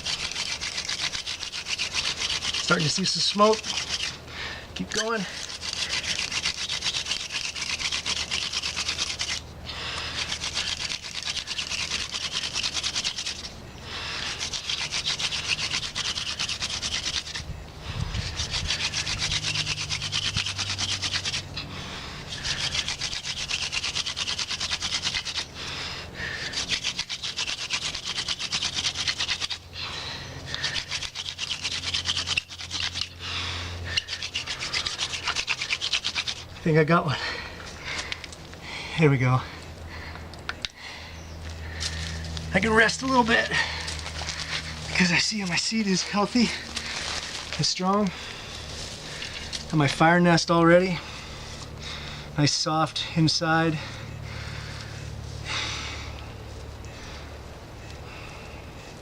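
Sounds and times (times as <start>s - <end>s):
hand drill rubbing rasp: 0.0s - 4.2s, 4.8s - 21.7s, 22.3s - 36.9s, 41.6s - 50.1s.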